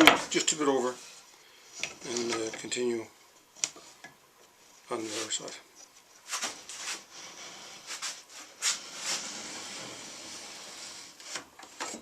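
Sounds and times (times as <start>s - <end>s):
pencil scraping on plywood: 6.8s - 11.4s.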